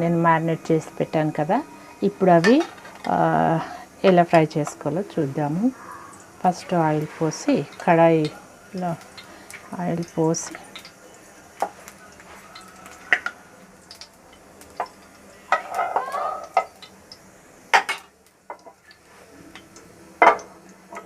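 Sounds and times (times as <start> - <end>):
oil sizzling in a pan: 0.0 - 21.0
metal utensils clinking in a pan: 2.4 - 3.2, 11.6 - 16.9.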